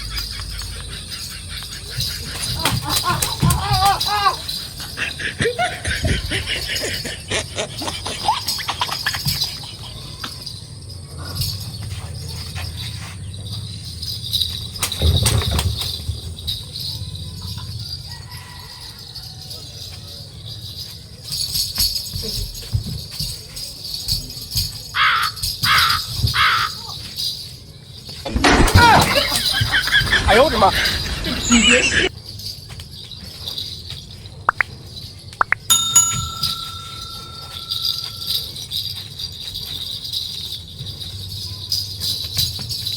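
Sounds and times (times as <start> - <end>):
jingling small bells: 0.0 - 42.9
bell-like chime ringing: 35.4 - 38.6.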